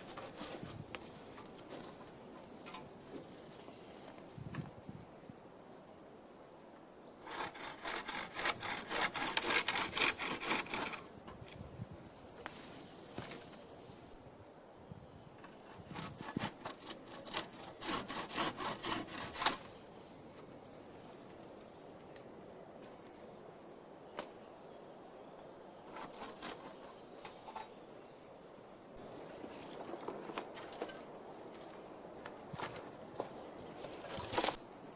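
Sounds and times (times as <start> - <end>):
hand saw cutting wood: 7.2 - 11.1, 15.6 - 19.7, 25.9 - 26.9.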